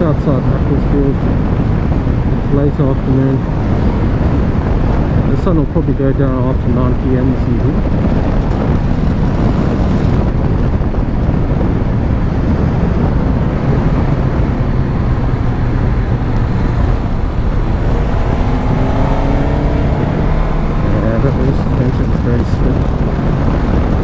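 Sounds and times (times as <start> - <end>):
wind rush on microphone: 0.0 - 24.0
motorcycle engine running: 6.8 - 24.0.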